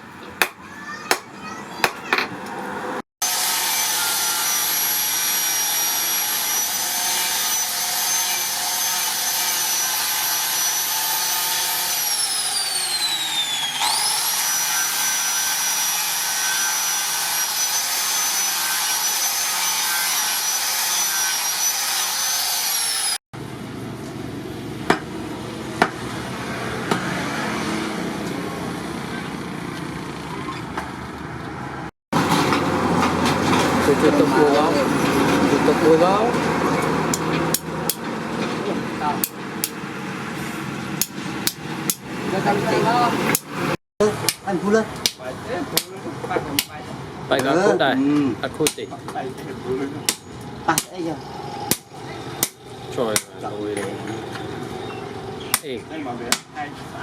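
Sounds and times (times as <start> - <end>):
power grinder whining: 3.2 - 23.2, 32.2 - 43.8.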